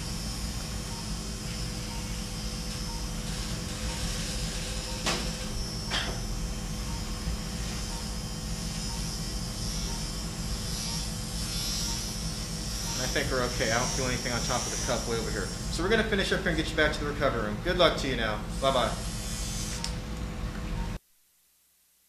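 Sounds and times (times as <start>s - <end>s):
equipment hiss and hum: 0.0s - 22.0s.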